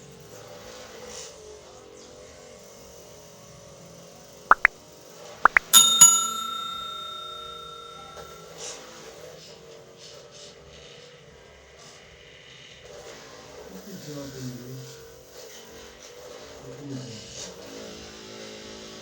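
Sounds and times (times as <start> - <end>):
bell-like metallic ding: 4.5 - 4.7, 5.5 - 8.5
quick upward chirps: 4.5 - 4.7, 5.5 - 8.4.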